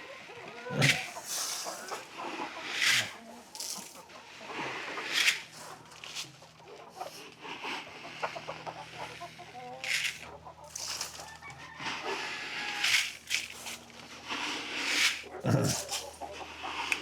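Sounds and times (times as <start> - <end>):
hens clucking: 0.0 - 17.0.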